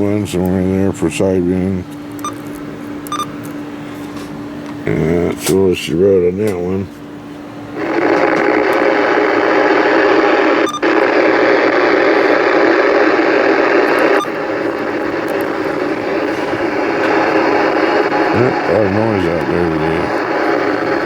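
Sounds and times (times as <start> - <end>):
radio static hiss: 7.8 - 21.0.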